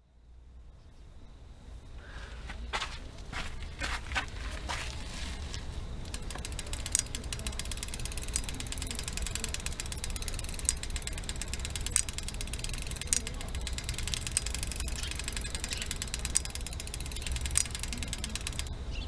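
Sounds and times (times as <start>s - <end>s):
sharp click from bicycle: 5.4s - 18.7s
bicycle freewheel ticking: 5.4s - 19.0s.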